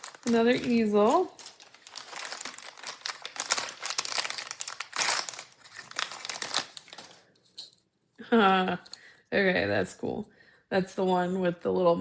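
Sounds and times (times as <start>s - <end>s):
plastic wrapping crinkling: 0.0s - 7.7s.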